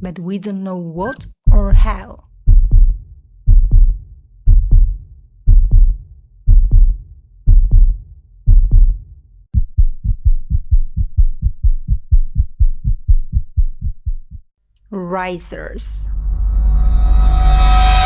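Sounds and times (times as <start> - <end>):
heartbeat: 1.4 - 14.5.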